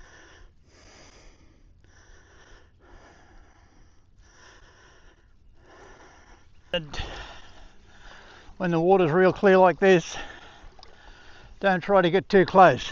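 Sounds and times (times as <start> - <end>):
person breathing quietly: 0.0 - 8.6, 10.1 - 11.6.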